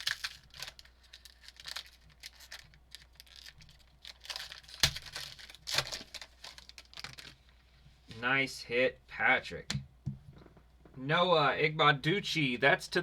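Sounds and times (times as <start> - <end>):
cards and packaging rustling: 0.0 - 7.5.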